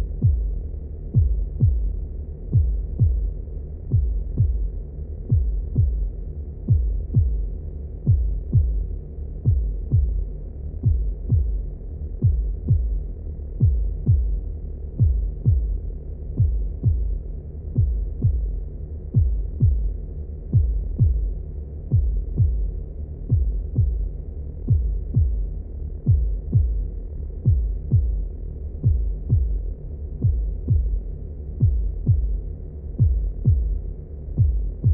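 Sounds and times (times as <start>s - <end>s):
heartbeat double thumps: 0.0s - 34.9s
low steady rumble: 0.0s - 34.9s.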